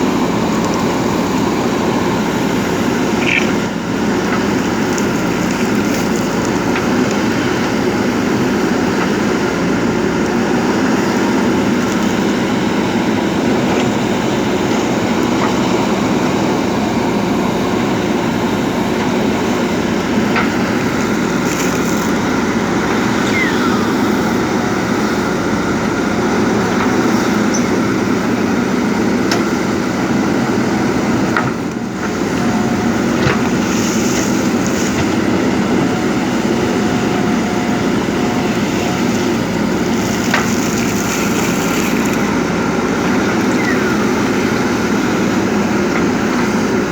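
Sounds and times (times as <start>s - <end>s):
diesel engine running under load: 0.0s - 46.9s
short squeal: 23.1s - 24.6s, 43.5s - 44.2s.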